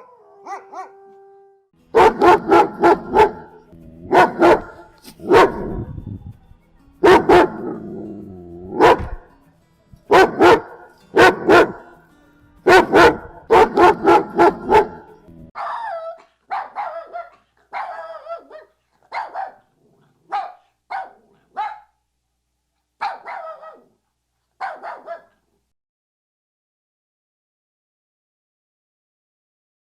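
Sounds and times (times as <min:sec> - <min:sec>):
dog barking deep: 0:00.0 - 0:01.0, 0:01.9 - 0:05.8, 0:07.0 - 0:07.8, 0:08.7 - 0:09.3, 0:10.1 - 0:12.0, 0:12.7 - 0:22.0, 0:23.0 - 0:24.0, 0:24.6 - 0:25.4
dog barking high and thin: 0:00.0 - 0:01.0, 0:01.9 - 0:05.9, 0:07.0 - 0:07.9, 0:08.7 - 0:09.3, 0:10.1 - 0:12.0, 0:12.7 - 0:22.0, 0:23.0 - 0:24.0, 0:24.6 - 0:25.4.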